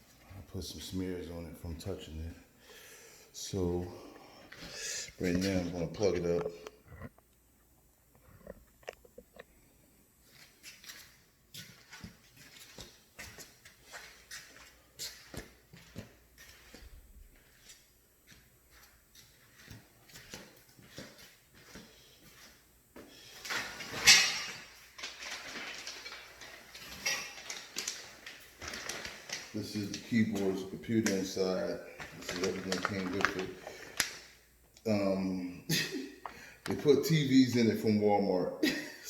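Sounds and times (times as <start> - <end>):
rustling and clattering objects: 10.2 - 34.4.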